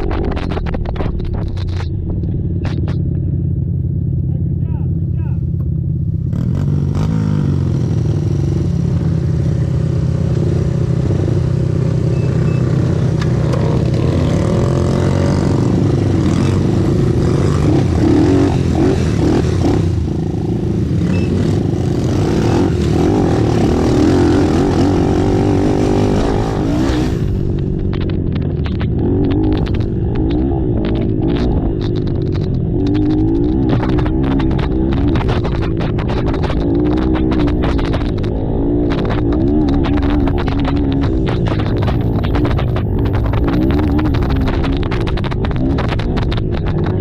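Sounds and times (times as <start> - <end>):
scattered clicks: 0.0 - 3.7, 21.1 - 47.0
racing atv engines: 0.0 - 47.0.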